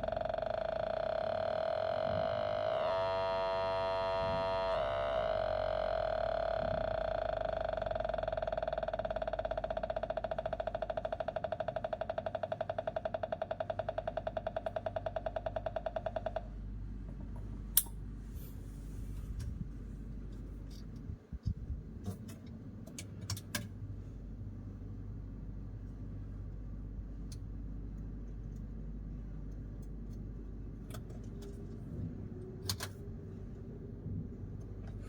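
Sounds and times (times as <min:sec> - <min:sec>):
pulsing buzzy electronic tone: 0:00.0 - 0:15.4
low hum: 0:00.0 - 0:22.8, 0:23.7 - 0:35.0.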